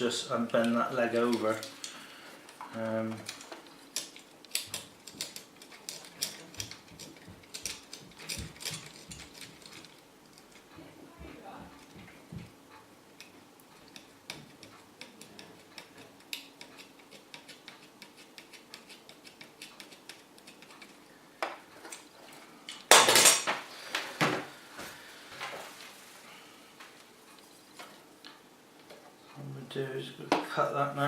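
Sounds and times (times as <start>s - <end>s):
metal tools clattering: 22.9s - 23.6s.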